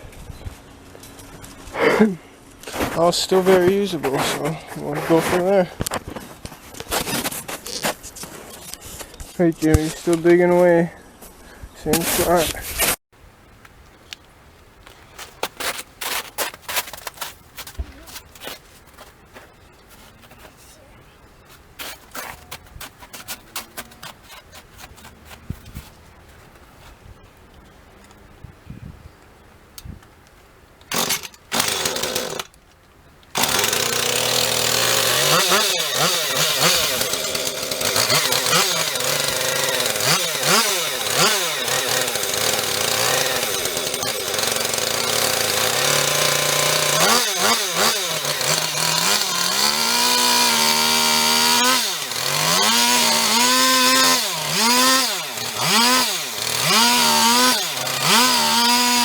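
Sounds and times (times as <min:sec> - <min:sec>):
chainsaw starting and revving: 0:30.9 - 0:32.6, 0:33.3 - 0:59.0.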